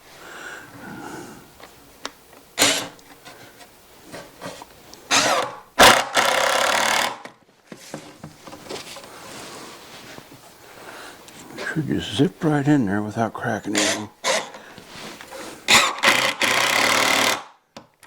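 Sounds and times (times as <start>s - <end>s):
power driver driving screws: 2.6s - 3.0s, 5.1s - 7.3s, 13.8s - 14.6s, 15.7s - 17.5s.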